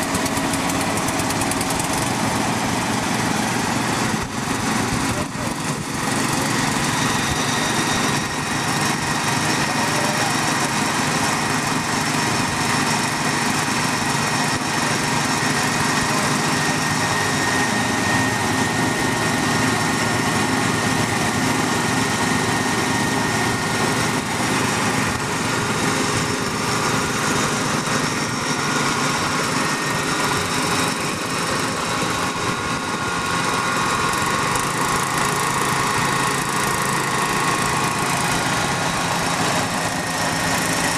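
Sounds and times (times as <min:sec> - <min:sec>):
engine running steadily: 0:00.0 - 0:40.9.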